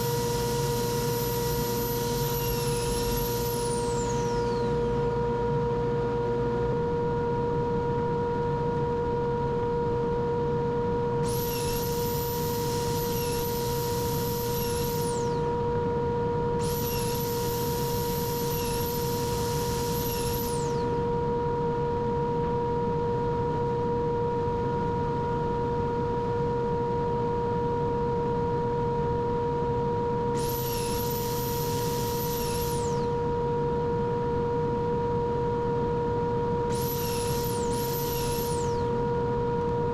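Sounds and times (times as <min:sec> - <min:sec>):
machine humming: 0:00.0 - 0:05.3.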